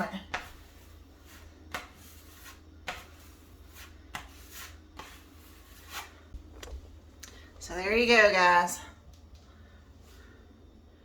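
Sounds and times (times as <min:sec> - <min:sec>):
knife scraping filler on wall: 0:00.2 - 0:06.3.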